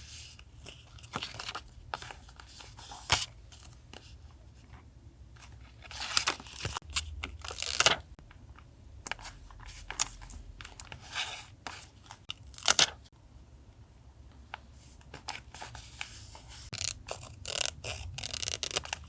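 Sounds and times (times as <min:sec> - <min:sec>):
paper tearing: 0:16.7 - 0:19.0.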